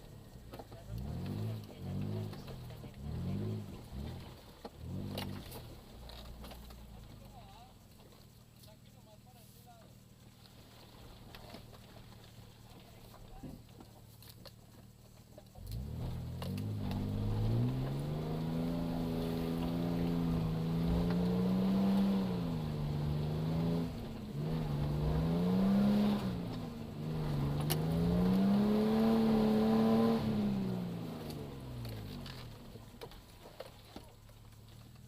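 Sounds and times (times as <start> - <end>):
car engine revving: 0.0 - 7.4, 15.1 - 34.9.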